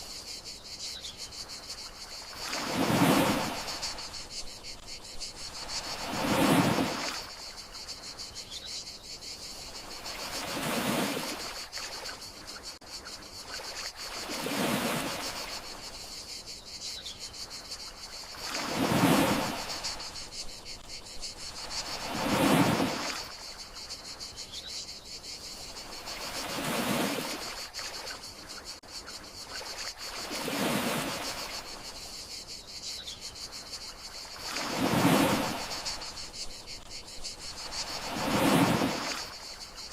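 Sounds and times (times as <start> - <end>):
crickets chirring: 0.0 - 39.9
sea waves washing in: 1.8 - 7.6, 9.9 - 12.2, 13.6 - 15.9, 18.2 - 20.8, 21.5 - 23.5, 25.8 - 28.2, 29.8 - 31.9, 34.2 - 36.4, 37.4 - 39.9.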